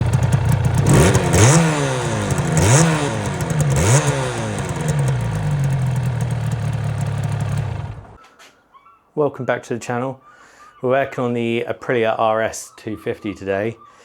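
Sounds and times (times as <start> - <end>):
two-stroke motorcycle engine revving: 0.0 - 8.2.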